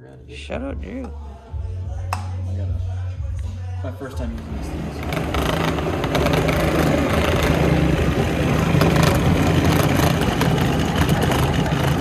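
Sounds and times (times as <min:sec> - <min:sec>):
kitchen appliance motor humming: 0:04.3 - 0:12.0.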